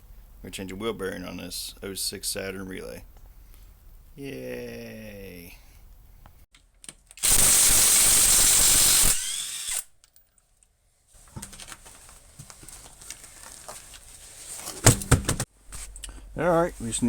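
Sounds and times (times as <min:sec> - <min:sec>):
power tool winding down: 0:07.2 - 0:09.9.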